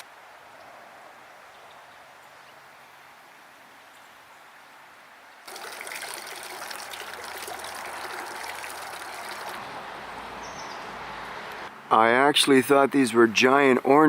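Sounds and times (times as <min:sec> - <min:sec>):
water splashing and trickling: 0:05.4 - 0:10.5.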